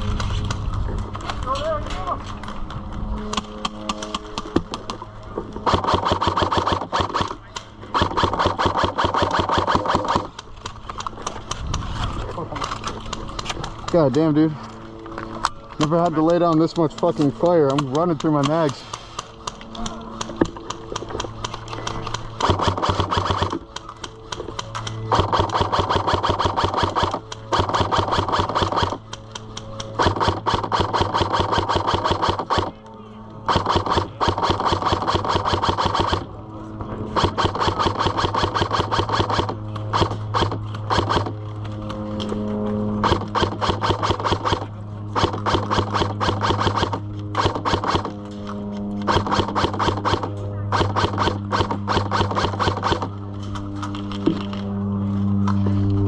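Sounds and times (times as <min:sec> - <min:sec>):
gun motor whine: 0:02.7 - 0:32.8, 0:33.4 - 0:56.0
airsoft gun firing full auto: 0:05.6 - 0:11.6, 0:19.4 - 0:32.8, 0:33.5 - 0:36.3, 0:37.2 - 0:41.4, 0:43.0 - 0:48.2, 0:49.1 - 0:53.1.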